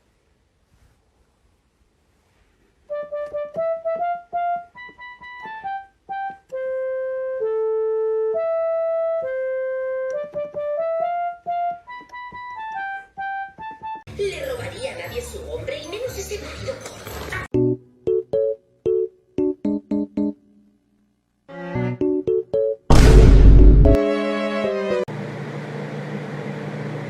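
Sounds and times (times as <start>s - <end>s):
simple keyboard tune: 2.9s - 14.1s, 17.5s - 20.8s, 21.6s - 25.1s.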